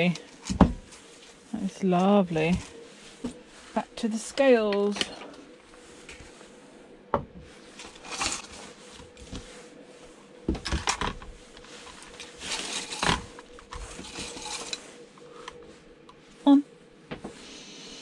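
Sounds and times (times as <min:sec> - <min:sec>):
faint steady hum: 0:00.0 - 0:18.0
rustling: 0:07.5 - 0:16.5.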